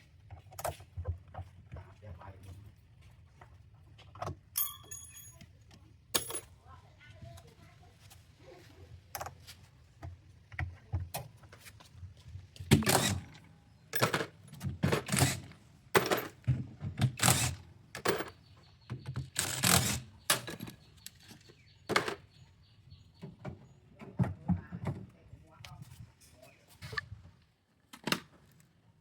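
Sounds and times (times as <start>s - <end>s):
hard parts knocking and scraping: 12.7s - 22.2s.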